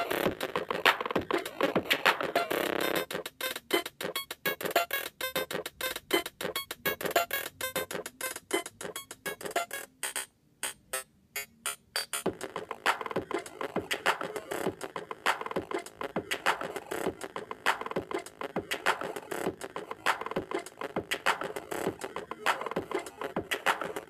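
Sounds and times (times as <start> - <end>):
electronic dance music: 0.0 - 4.1, 12.2 - 24.0.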